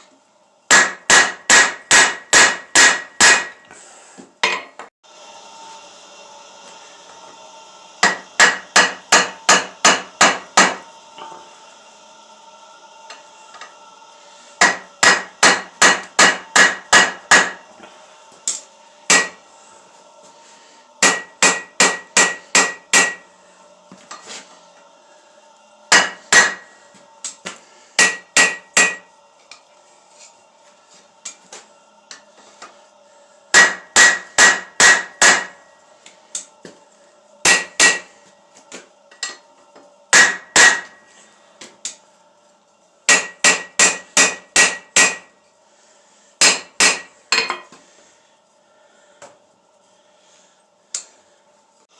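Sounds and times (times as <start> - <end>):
hammer striking steel on anvil: 0.7 - 3.6, 8.0 - 11.4, 14.6 - 17.6, 18.5 - 19.4, 21.0 - 23.3, 25.9 - 27.4, 28.0 - 29.1, 33.5 - 35.6, 37.4 - 38.1, 40.1 - 41.0, 43.1 - 45.3, 46.4 - 47.7
faint steady hum: 3.0 - 51.9.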